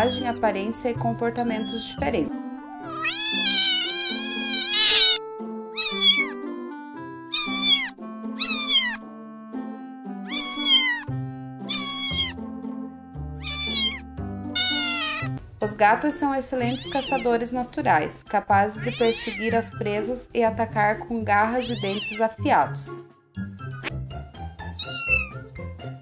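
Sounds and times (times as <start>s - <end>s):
cat meowing: 0.0s - 0.4s, 1.4s - 2.0s, 2.7s - 5.2s, 5.8s - 6.4s, 7.3s - 9.0s, 10.2s - 12.4s, 13.4s - 15.4s, 16.6s - 17.3s, 18.7s - 19.6s, 21.6s - 22.3s, 24.7s - 25.5s
background music with sustained notes: 0.0s - 26.0s.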